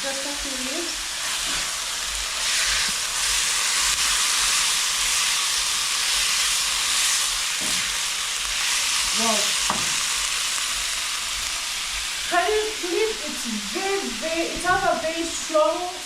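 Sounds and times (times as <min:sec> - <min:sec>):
food sizzling in hot oil: 0:00.0 - 0:16.0.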